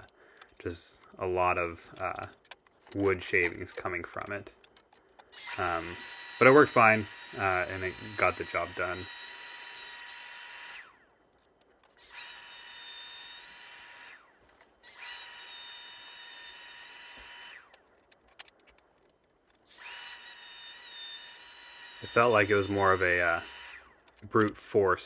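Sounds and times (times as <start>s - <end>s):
router whining: 5.0s - 11.0s, 11.8s - 17.9s, 19.7s - 24.6s.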